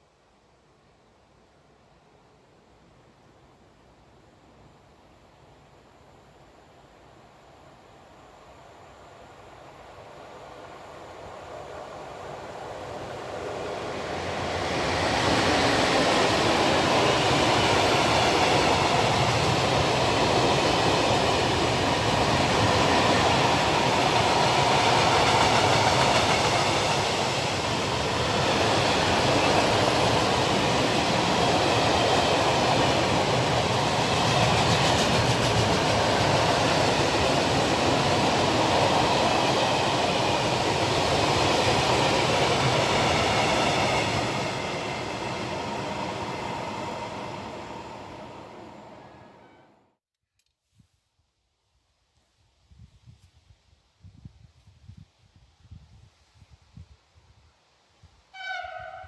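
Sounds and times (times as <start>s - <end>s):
freight train rolling past: 8.6s - 49.9s, 58.3s - 59.0s.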